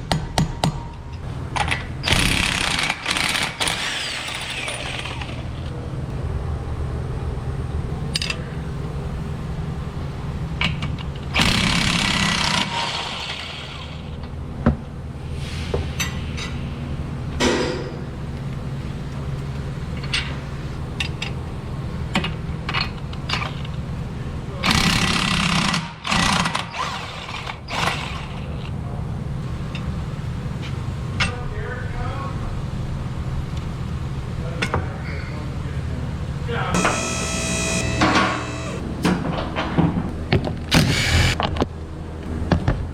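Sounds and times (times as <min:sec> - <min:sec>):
steady low hum: 0:00.0 - 0:26.1, 0:27.6 - 0:42.9
impact wrench running: 0:01.6 - 0:05.6, 0:10.6 - 0:14.2, 0:24.6 - 0:28.6, 0:36.8 - 0:38.8, 0:40.7 - 0:41.4.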